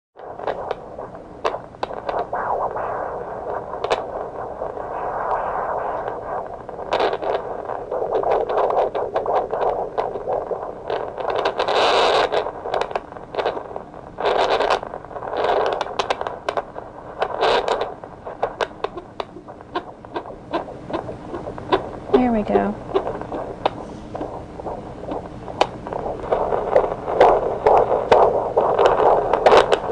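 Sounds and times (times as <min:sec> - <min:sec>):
doppler static hiss: 0:00.2 - 0:29.9
scratchy crackles of probe: 0:00.2 - 0:29.9.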